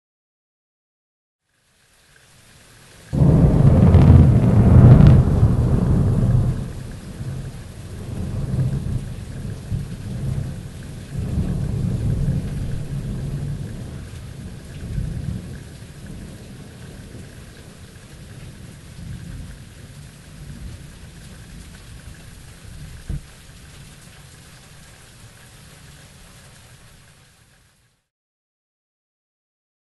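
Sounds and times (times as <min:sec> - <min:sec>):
rain hiss: 0:01.4 - 0:28.1
sharp thunder crack: 0:03.2 - 0:10.4
thunder rumbling: 0:03.2 - 0:19.7.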